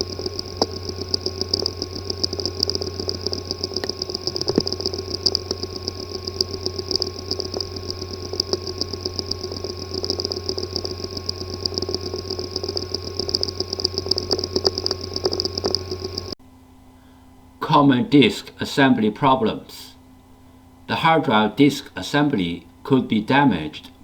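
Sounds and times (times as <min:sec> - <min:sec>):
fast irregular ticking: 0:00.0 - 0:16.4
hard drive humming and buzzing: 0:00.0 - 0:24.0.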